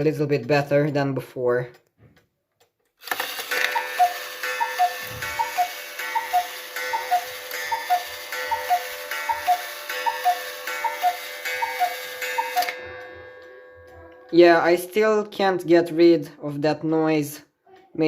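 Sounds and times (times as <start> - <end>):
clockwork hum: 3.0 - 13.7
cuckoo clock whistle call: 3.5 - 12.8
gong strike ringing: 4.5 - 14.3.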